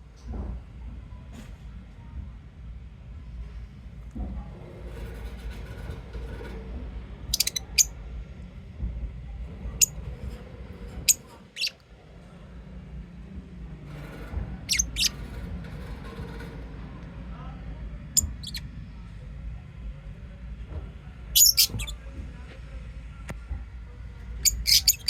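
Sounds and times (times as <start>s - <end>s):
low background hum: 0.0s - 25.0s
birds chirping high-pitched: 7.3s - 7.9s, 11.1s - 11.8s, 14.7s - 15.1s, 18.2s - 18.6s, 21.4s - 21.9s, 24.4s - 25.0s.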